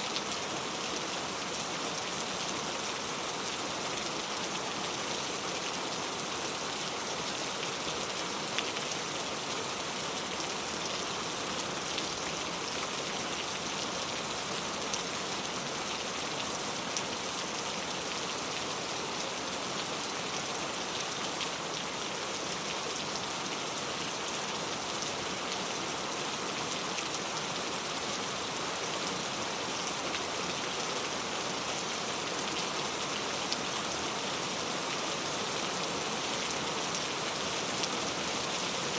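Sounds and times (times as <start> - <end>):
steady rainfall: 0.0 - 38.9.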